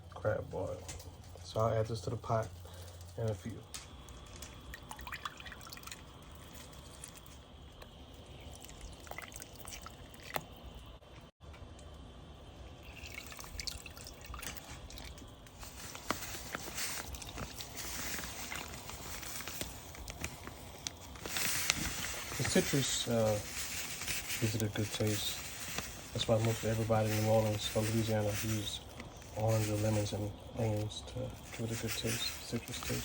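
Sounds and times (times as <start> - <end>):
liquid pouring into a pot: 4.1 - 10.9, 12.5 - 15.3, 16.9 - 19.3
steady hiss: 15.4 - 33.0.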